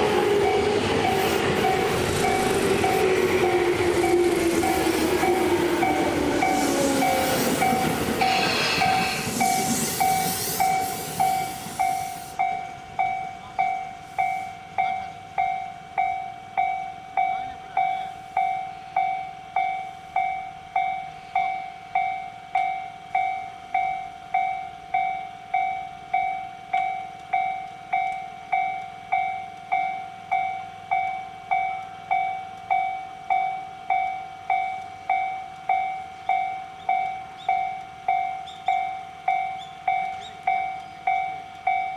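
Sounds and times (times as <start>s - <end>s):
electric train rushing past: 0.0s - 13.2s
level crossing alarm bell ringing: 0.0s - 41.9s.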